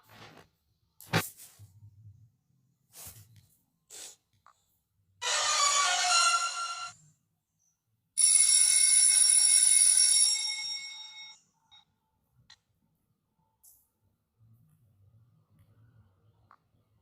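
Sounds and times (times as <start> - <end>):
ringing high tones: 5.2 - 7.0
tonal sound effect: 5.2 - 7.0.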